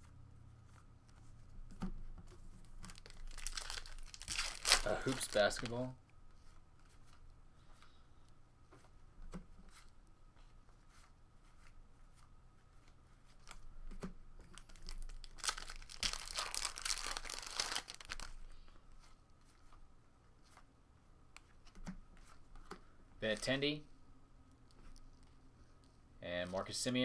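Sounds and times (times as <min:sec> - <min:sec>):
cards rustling and clicking: 0:00.7 - 0:07.2, 0:12.8 - 0:19.8
card pack wrapper tearing: 0:02.8 - 0:05.8, 0:14.6 - 0:18.4.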